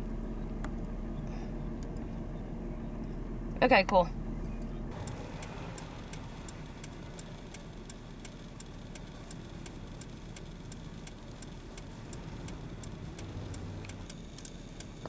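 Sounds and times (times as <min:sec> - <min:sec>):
car engine and road rumble: 0:00.0 - 0:15.0
indicator relay clicking: 0:04.9 - 0:15.0.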